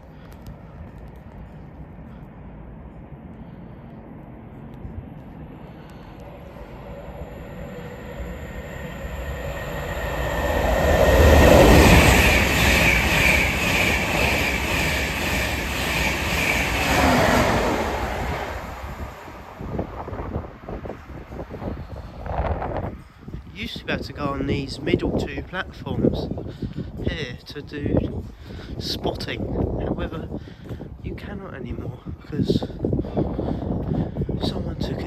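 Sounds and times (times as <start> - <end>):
train passing at speed: 0.1 - 35.0
high whine: 4.6 - 23.0.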